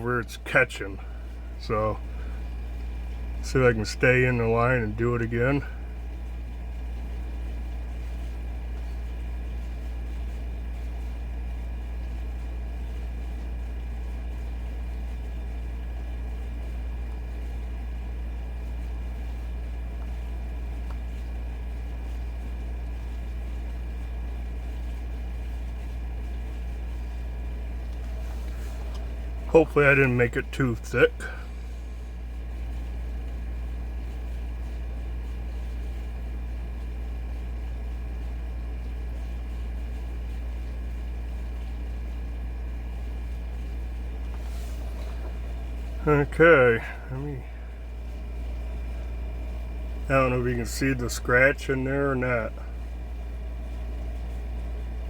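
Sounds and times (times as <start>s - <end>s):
air conditioner humming: 0.0s - 55.0s
faint steady whine: 0.0s - 55.0s.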